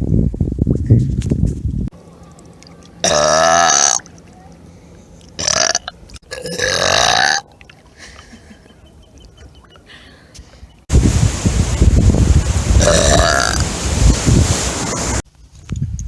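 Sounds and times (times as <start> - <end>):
loud burps: 3.0 - 4.1, 5.4 - 7.4, 12.8 - 13.6.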